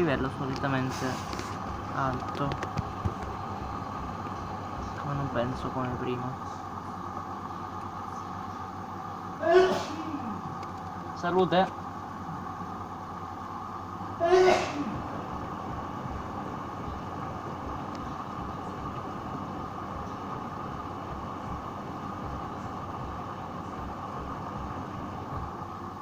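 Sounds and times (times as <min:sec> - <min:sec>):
washing machine humming: 0:00.0 - 0:26.0
person sneezing: 0:09.4 - 0:10.3, 0:14.2 - 0:15.0.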